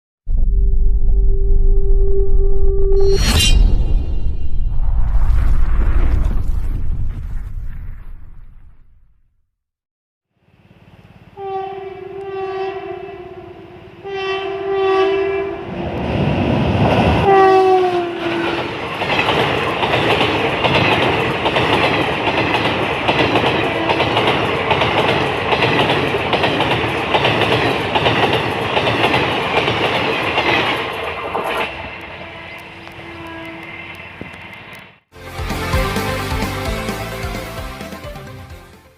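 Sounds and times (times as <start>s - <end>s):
train horn blasts: 11.3s - 15.8s, 17.2s - 18.7s, 23.6s - 24.2s, 32.0s - 34.3s
train wheels clattering on rails: 18.4s - 32.2s.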